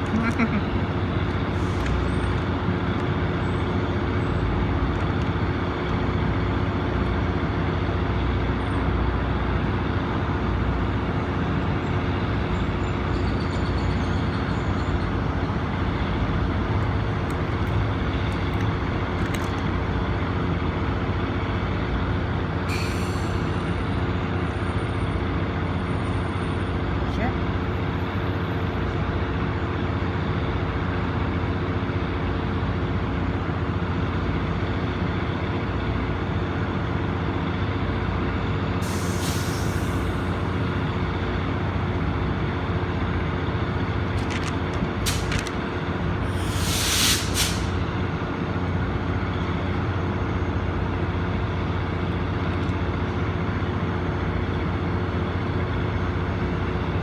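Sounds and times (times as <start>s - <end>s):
train engine hum: 0.0s - 57.0s
compressed air hiss: 22.7s - 23.9s, 38.8s - 40.6s, 45.0s - 45.6s, 46.2s - 47.9s.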